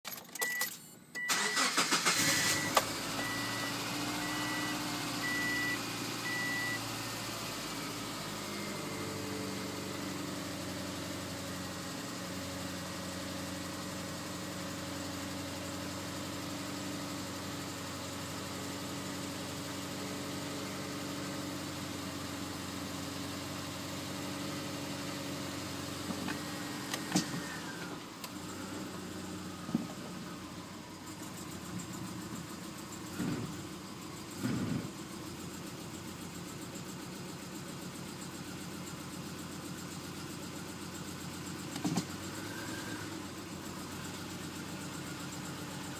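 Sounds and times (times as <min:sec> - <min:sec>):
car engine cranking and idling: 0:00.0 - 0:45.9
electronic chime beeping: 0:02.5 - 0:06.8.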